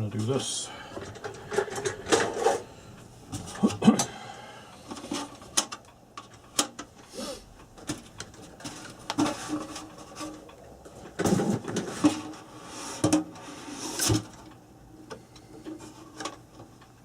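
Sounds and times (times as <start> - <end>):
small clicks and knocks of handling parts: 4.8 - 12.4, 14.0 - 17.0.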